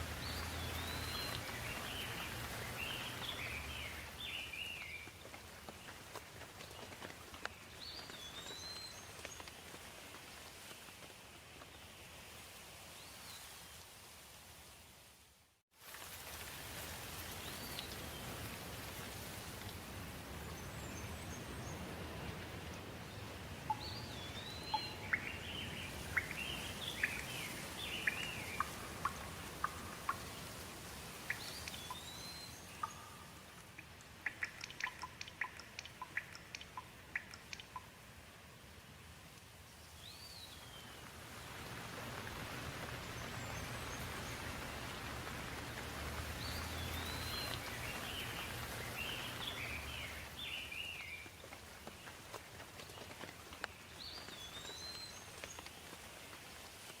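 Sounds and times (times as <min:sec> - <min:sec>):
birds chirping: 0:00.0 - 0:06.2, 0:22.7 - 0:30.4, 0:42.2 - 0:51.4
water drips ticking: 0:00.0 - 0:11.1, 0:16.4 - 0:19.9, 0:23.6 - 0:38.3, 0:41.6 - 0:56.8
steady rain: 0:00.0 - 0:57.0.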